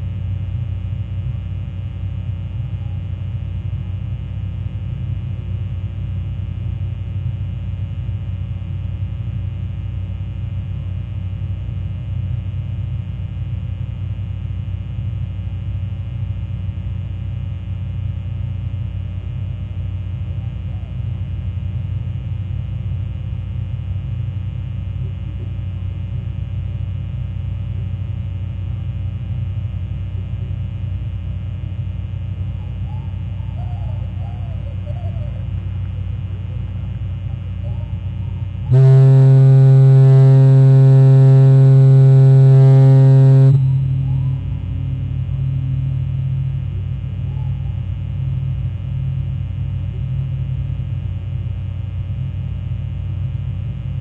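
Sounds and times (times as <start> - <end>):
low engine drone: 0.0 - 54.0
faint wavering chirps: 32.2 - 48.1.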